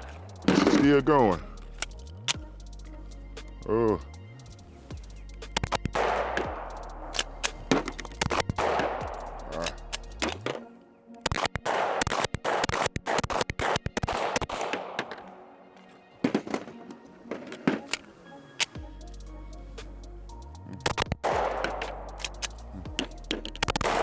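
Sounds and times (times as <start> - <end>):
background music with bass: 0.0 - 10.6, 18.7 - 24.0
pistol shots with echo: 11.3 - 15.4.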